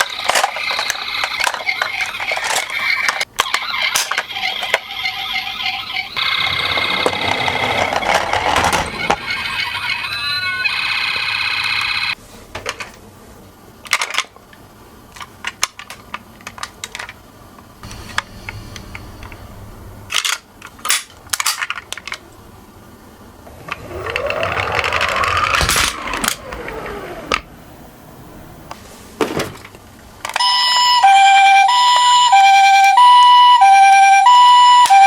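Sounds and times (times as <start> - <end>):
toy ambulance siren: 0.0 - 12.2, 23.8 - 27.2, 30.3 - 35.0.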